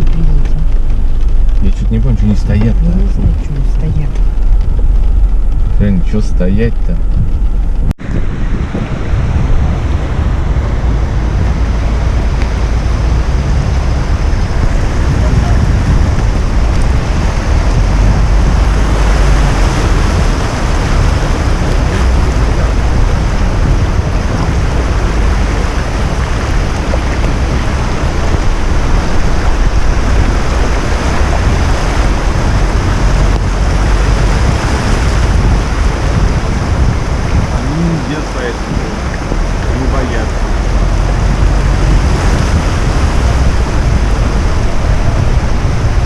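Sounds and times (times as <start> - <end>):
heavy rain downpour: 0.0 - 7.4, 8.0 - 46.0
water rushing around a car: 0.0 - 46.0.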